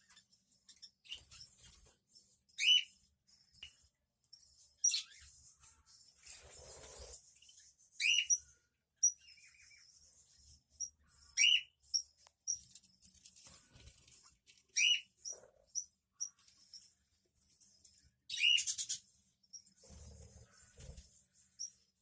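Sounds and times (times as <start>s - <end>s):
budgerigars chirping and chattering: 0.0s - 1.9s, 2.6s - 3.8s, 4.4s - 17.0s, 18.3s - 21.9s.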